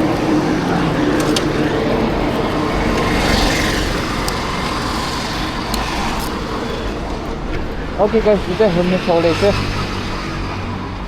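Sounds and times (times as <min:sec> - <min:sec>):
engine humming: 0:00.0 - 0:11.0
road traffic noise: 0:00.0 - 0:11.0
wind rumbling on microphone: 0:00.0 - 0:11.0.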